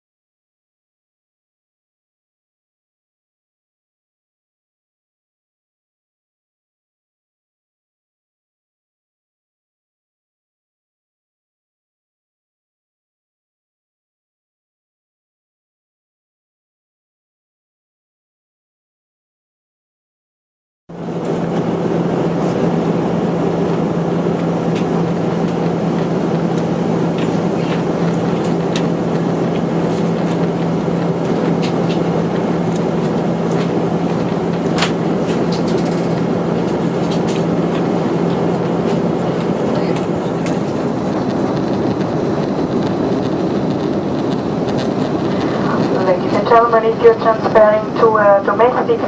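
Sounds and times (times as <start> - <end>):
airliner cabin engine rumble: 20.9 - 49.0.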